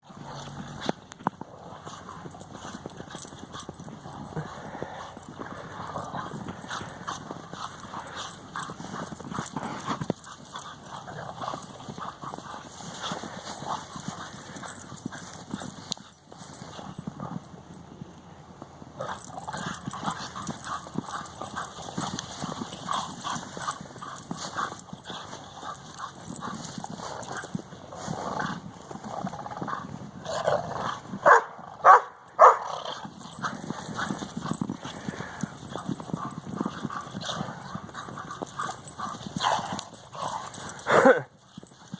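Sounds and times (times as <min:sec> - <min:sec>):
dog barking: 0:31.2 - 0:32.7.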